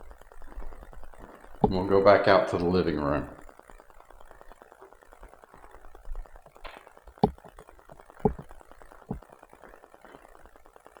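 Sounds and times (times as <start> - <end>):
footsteps on a floor: 8.2 - 8.4.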